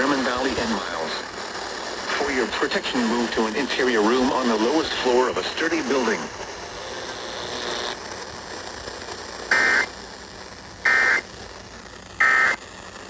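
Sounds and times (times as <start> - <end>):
digital data tone bursts: 9.5 - 10.0, 10.8 - 11.4, 12.2 - 12.6.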